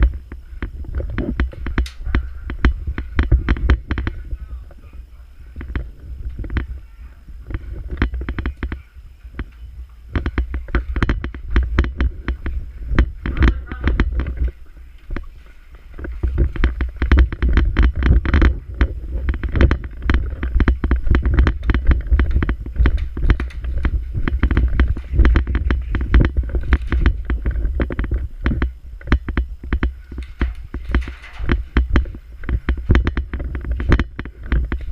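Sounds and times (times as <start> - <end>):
sharp clicks and snaps: 0.0 - 4.2, 7.4 - 15.3, 16.0 - 34.9
wind rumble on microphone: 0.0 - 34.9.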